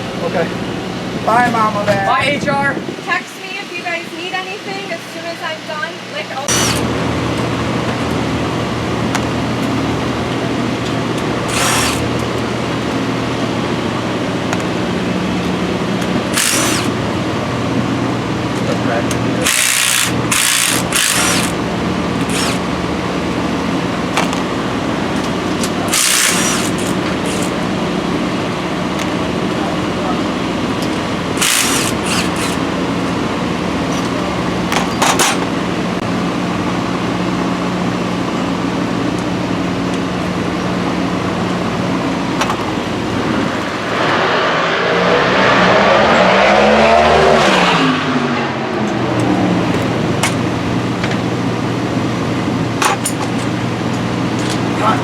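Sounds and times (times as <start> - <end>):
mechanical hum: 0.0 - 55.0
vehicle passing by: 43.2 - 50.2.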